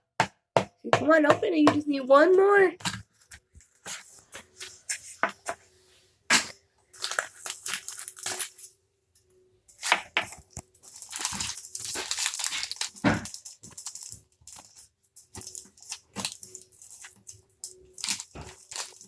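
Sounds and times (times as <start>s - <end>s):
plastic packaging crinkling and tearing: 7.0s - 8.7s, 9.8s - 19.0s.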